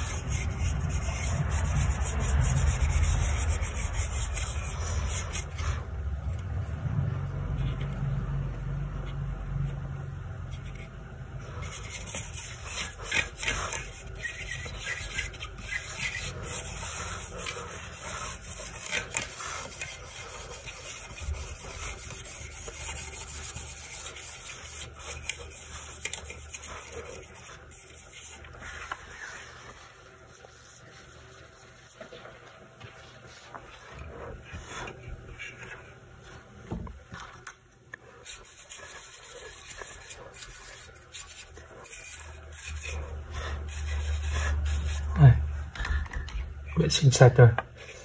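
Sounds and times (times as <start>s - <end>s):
low hum: 0.0s - 12.6s.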